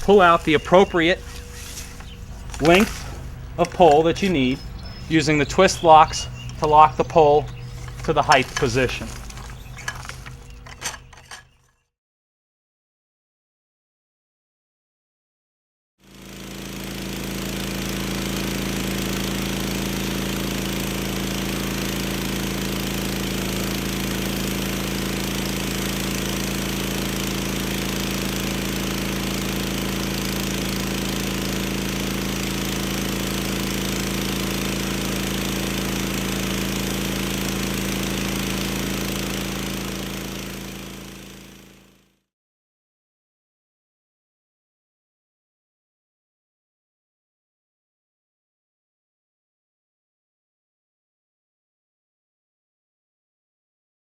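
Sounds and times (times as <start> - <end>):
pressure washer running: 0.0 - 11.6, 16.1 - 42.0.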